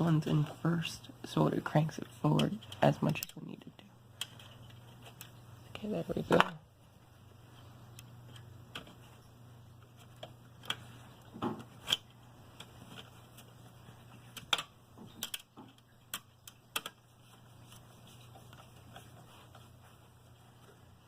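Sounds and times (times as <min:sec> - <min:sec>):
faint low hum: 0:00.0 - 0:21.0.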